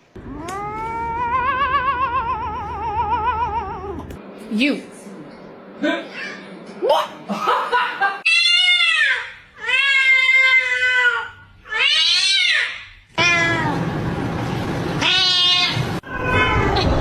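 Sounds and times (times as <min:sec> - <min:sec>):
cat meowing: 0:13.2 - 0:13.8, 0:15.0 - 0:17.0.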